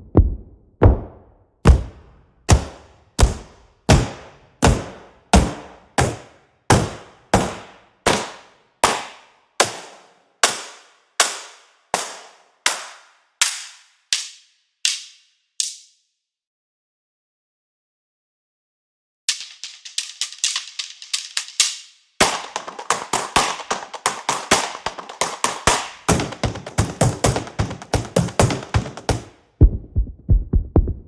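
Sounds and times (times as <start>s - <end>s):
box percussion hits: 1.7s - 15.0s, 22.2s - 29.4s.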